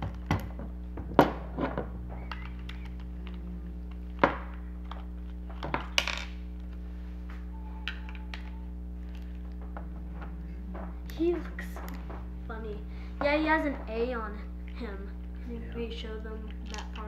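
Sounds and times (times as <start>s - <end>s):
steady low hum: 0.0s - 17.0s
small hard objects clicking: 16.4s - 17.0s.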